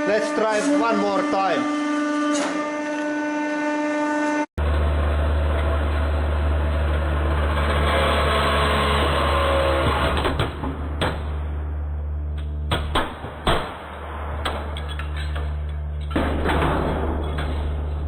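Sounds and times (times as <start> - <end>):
steady pitched whine: 11.3 - 12.8.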